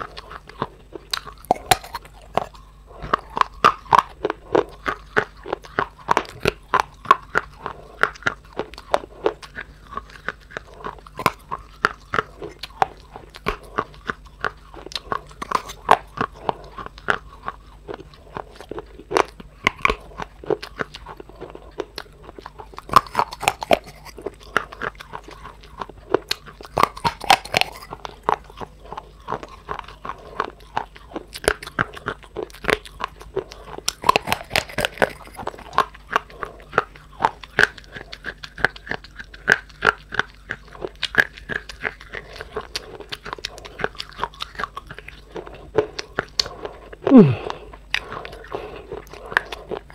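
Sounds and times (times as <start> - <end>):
person chewing crunchy clay: 0.0 - 49.9.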